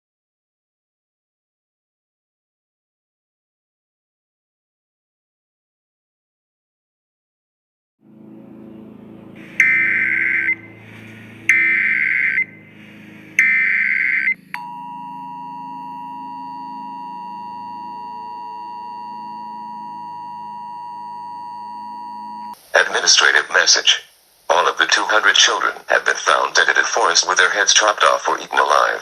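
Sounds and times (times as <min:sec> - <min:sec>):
faint background music: 0:08.0 - 0:13.8
two-tone attention signal: 0:09.4 - 0:22.6
alert data tone bursts: 0:09.4 - 0:23.4.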